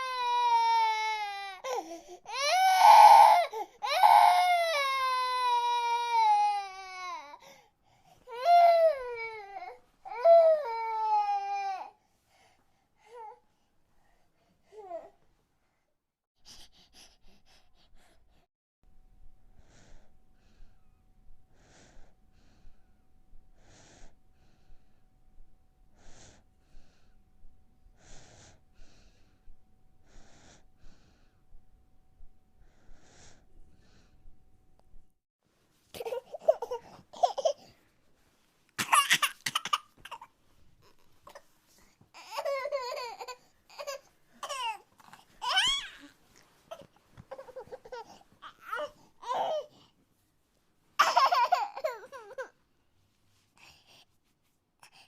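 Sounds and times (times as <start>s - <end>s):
baby breathing softly: 1.6s - 2.3s, 7.3s - 8.4s, 11.9s - 18.5s, 19.5s - 25.0s, 25.9s - 27.2s, 27.9s - 31.6s, 32.6s - 34.3s, 53.2s - 54.2s, 54.8s - 55.0s.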